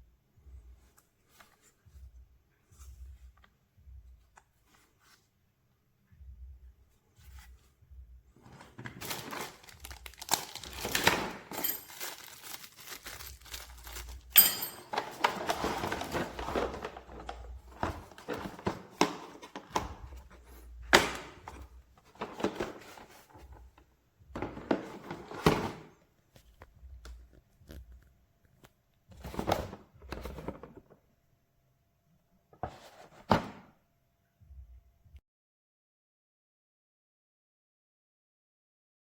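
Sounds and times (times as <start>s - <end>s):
packaging crinkling and rustling: 8.4s - 23.8s
hard parts clicking and knocking: 8.5s - 20.3s.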